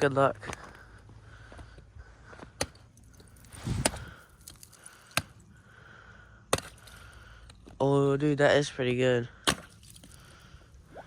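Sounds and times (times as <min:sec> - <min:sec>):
tool chopping ice: 0:06.5 - 0:06.9, 0:09.4 - 0:09.9.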